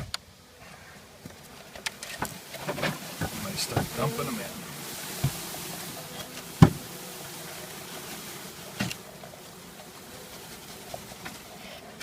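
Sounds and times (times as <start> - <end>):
steady bee hum: 0.0 - 12.0
knocks on bee package: 5.2 - 5.4, 6.4 - 6.9.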